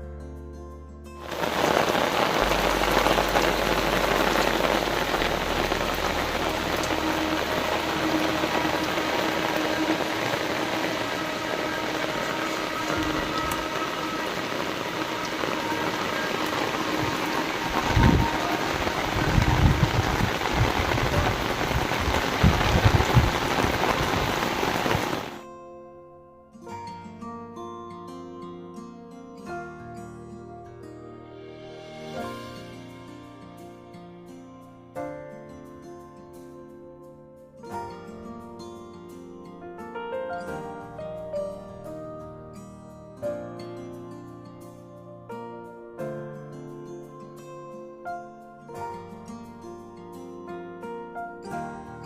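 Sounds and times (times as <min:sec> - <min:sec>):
faint musical tones: 0:01.2 - 0:25.3
steady rain falling: 0:01.2 - 0:25.4.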